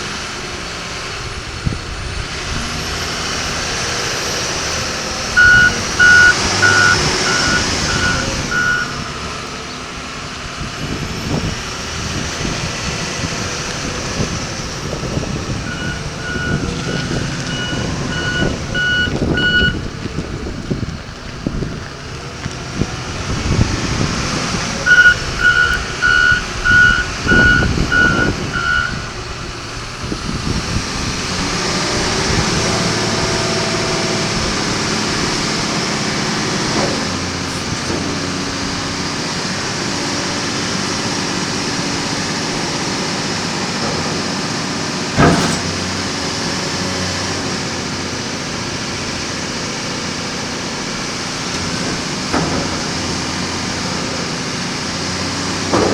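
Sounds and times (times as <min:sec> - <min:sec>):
diesel engine running: 0:00.0 - 0:55.9
backup alarm beeping: 0:05.4 - 0:09.0, 0:15.4 - 0:19.9, 0:24.8 - 0:29.2.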